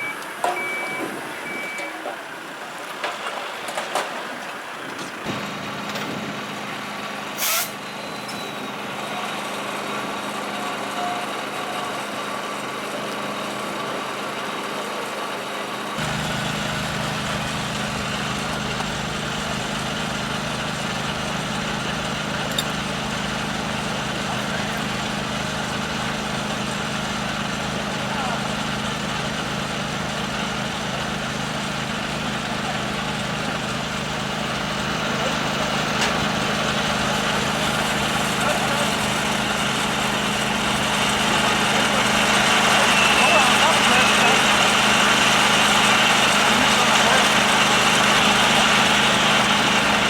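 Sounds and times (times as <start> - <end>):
diesel engine running: 0.0 - 50.0
short hiss: 7.4 - 7.8.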